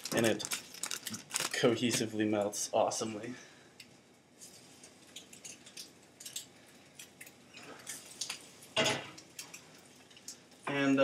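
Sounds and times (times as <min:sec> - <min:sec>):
egg frying in a pan: 0:04.4 - 0:10.7.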